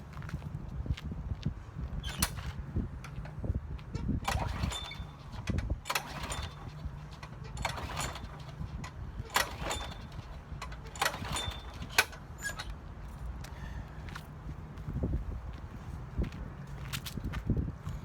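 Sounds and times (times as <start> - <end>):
metallic clanks and rattles: 2.0 - 12.9.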